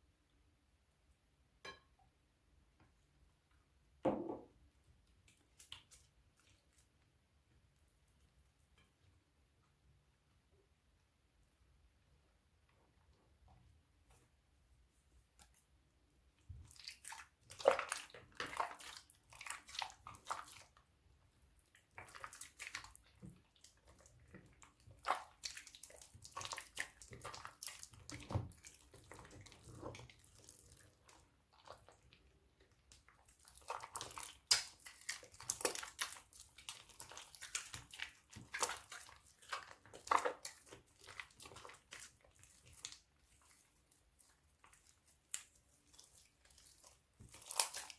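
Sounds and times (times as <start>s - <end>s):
crunchy slime being squished: 32.9s - 47.9s.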